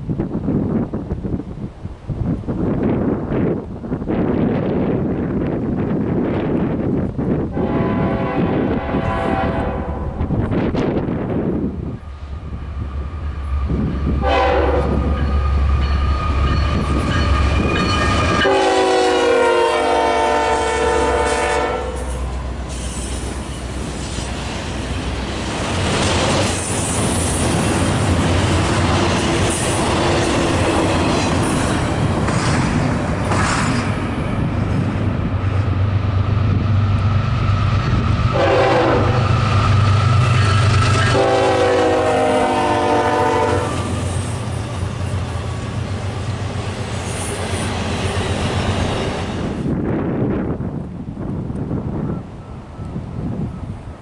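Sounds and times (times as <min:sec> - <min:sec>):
train rumbling: 0:00.0 - 0:54.0
locomotive air horn blasts: 0:07.5 - 0:10.2, 0:14.2 - 0:15.2, 0:18.3 - 0:22.3, 0:38.3 - 0:39.4, 0:41.0 - 0:44.0
wheels clattering on rail: 0:22.0 - 0:35.8.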